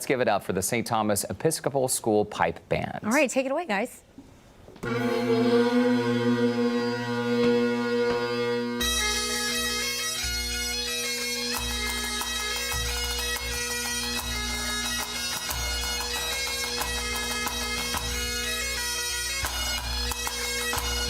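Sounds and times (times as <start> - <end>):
bagpipes with drones: 4.8 - 21.0.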